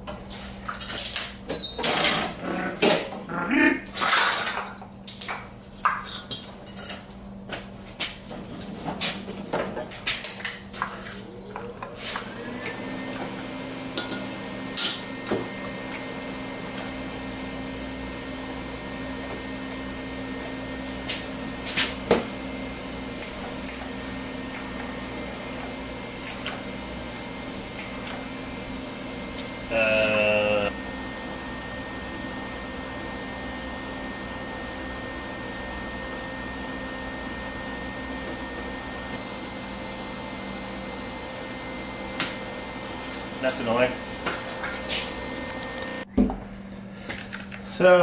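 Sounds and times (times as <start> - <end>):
machine motor whining and humming: 8.2 - 47.6.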